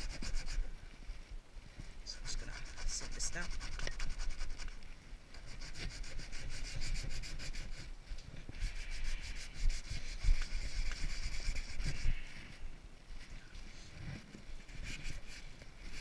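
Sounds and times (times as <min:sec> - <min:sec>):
sandpaper rubbing on wood: 0:00.0 - 0:00.7, 0:02.3 - 0:04.8, 0:05.4 - 0:07.9, 0:08.6 - 0:12.3, 0:14.6 - 0:16.0.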